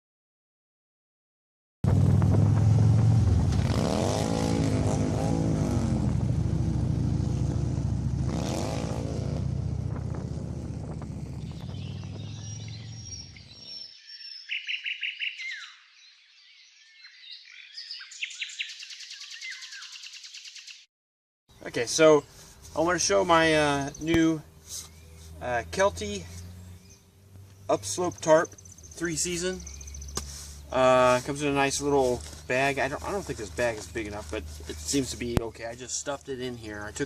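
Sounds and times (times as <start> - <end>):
motorcycle engine running: 1.8 - 13.5, 25.4 - 37.0
birds chirping: 10.6 - 20.9, 21.5 - 37.0.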